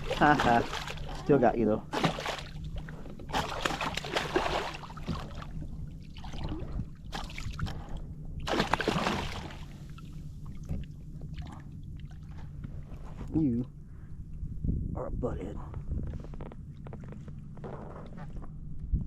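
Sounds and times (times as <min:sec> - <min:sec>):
water splashing against kayak: 0:00.0 - 0:11.6.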